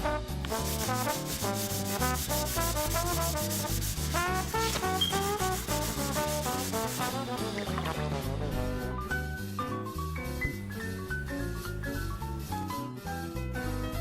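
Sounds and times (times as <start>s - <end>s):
jazz music with brass: 0.0s - 8.9s
walking bass line: 0.2s - 8.9s
scratchy rhythm: 0.5s - 7.9s.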